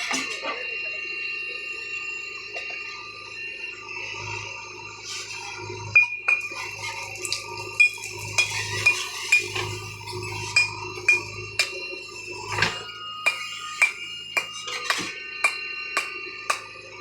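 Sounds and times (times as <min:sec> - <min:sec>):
low machine hum: 0:04.4 - 0:17.0
metallic clinks and knocks: 0:07.8 - 0:11.8.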